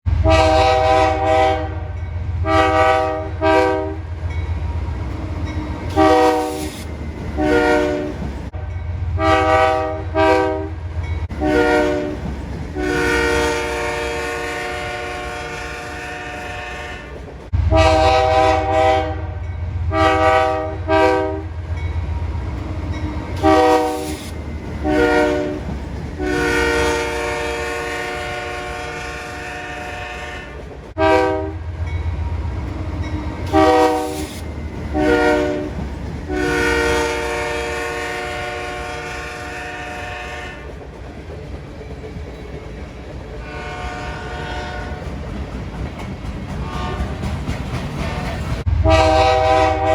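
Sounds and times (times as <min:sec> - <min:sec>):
train rumbling: 0:00.0 - 0:49.9
train air horn blasts: 0:00.1 - 0:04.0, 0:05.9 - 0:21.5, 0:23.4 - 0:31.6, 0:33.4 - 0:40.7, 0:43.4 - 0:45.1, 0:46.6 - 0:47.3, 0:48.7 - 0:49.9.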